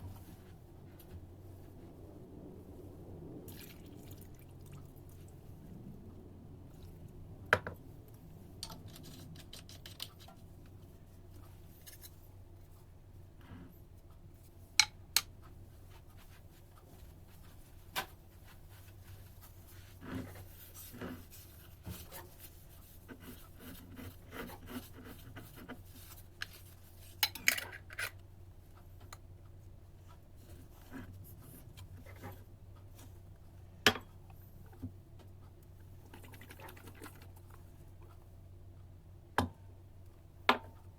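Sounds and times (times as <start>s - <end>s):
faint low hum: 0.0s - 40.9s
utensils scraping and rubbing: 19.6s - 28.2s.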